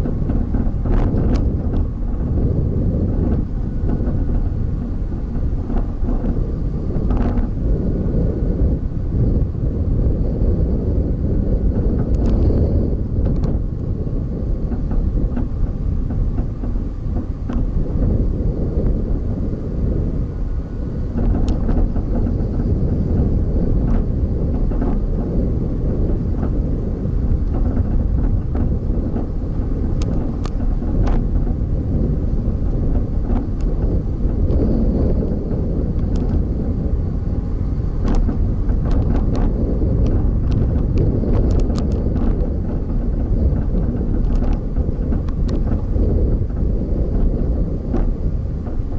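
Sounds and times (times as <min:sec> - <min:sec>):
vehicle driving along road: 0:00.0 - 0:48.9
wind buffeting microphone: 0:00.0 - 0:48.9.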